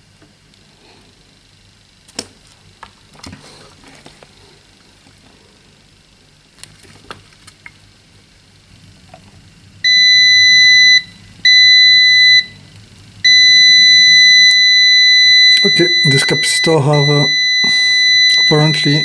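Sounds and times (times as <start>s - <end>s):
multimeter continuity beeps: 9.8s - 12.6s, 13.2s - 19.0s.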